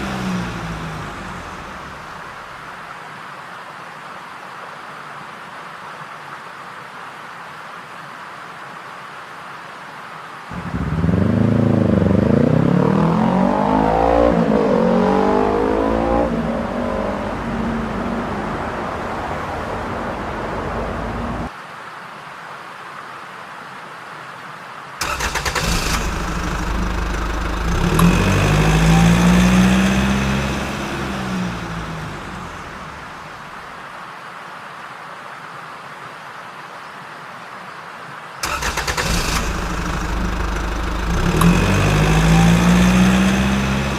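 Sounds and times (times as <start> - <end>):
car engine revving: 0.0 - 2.5, 10.5 - 21.5, 25.0 - 33.6, 38.4 - 43.9
engine crackle: 0.0 - 2.7, 25.0 - 33.7, 38.4 - 43.9.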